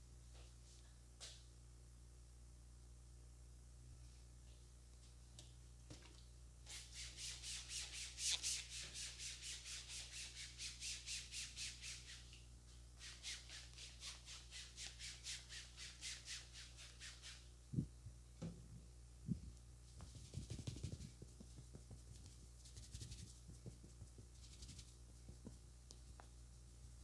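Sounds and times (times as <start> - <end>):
hands rubbing over hair: 19.9 - 27.0.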